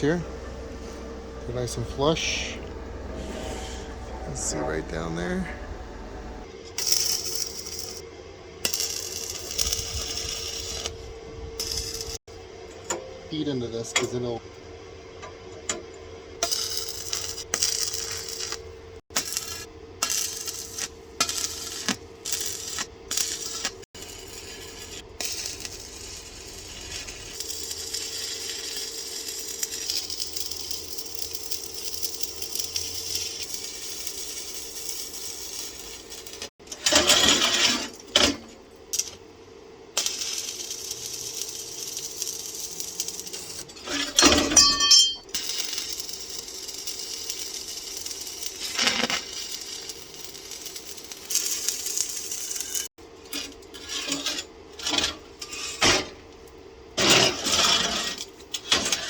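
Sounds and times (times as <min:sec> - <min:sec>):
scraping hiss: 0:00.0 - 0:06.5
metal clinking and rattling: 0:44.2 - 0:45.3.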